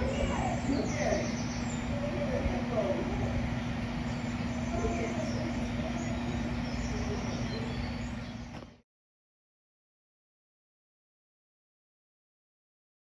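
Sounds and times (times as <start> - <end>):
faint voices: 0.0 - 8.8
low mechanical hum: 0.0 - 8.8.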